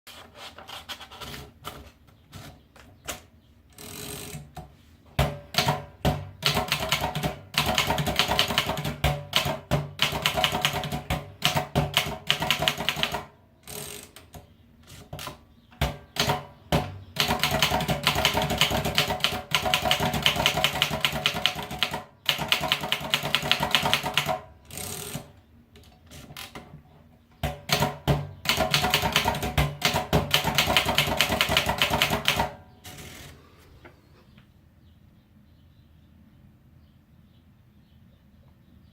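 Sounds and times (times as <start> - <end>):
manual typewriter typing: 5.5 - 14.4, 16.0 - 25.4, 27.4 - 33.3.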